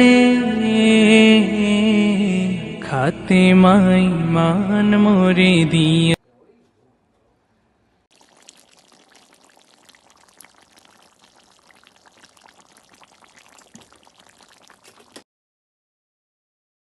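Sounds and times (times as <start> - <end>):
food sizzling with small pops: 8.1 - 15.2.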